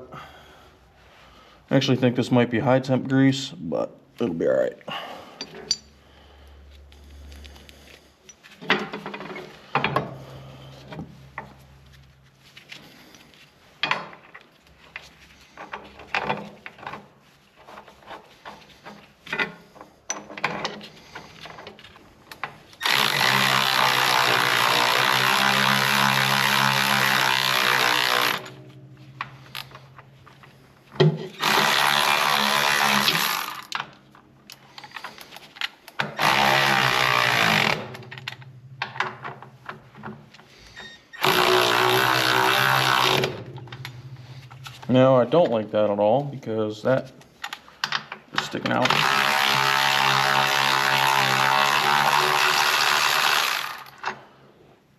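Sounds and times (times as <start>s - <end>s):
tools and metal parts clinking: 5.4s - 6.0s, 13.1s - 23.0s, 37.6s - 41.0s, 43.1s - 45.6s
power drill running: 22.8s - 28.7s, 31.3s - 33.8s, 36.1s - 38.5s, 40.8s - 44.6s, 48.8s - 54.0s.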